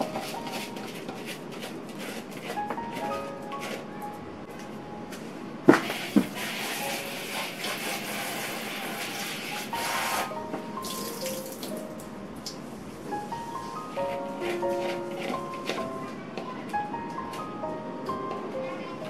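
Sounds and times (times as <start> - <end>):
tap water running into sink: 7.6 - 10.2, 10.8 - 11.8.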